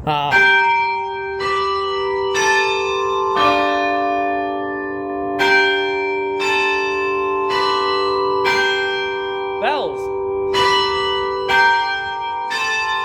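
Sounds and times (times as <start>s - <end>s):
tower bells chiming: 0.3s - 13.0s.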